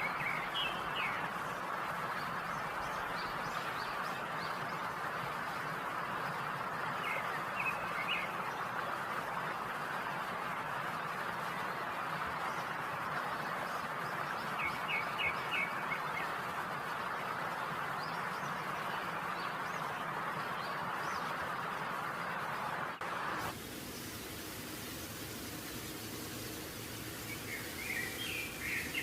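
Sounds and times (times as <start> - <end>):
chicken deep-frying sizzle: 23.3 - 29.0.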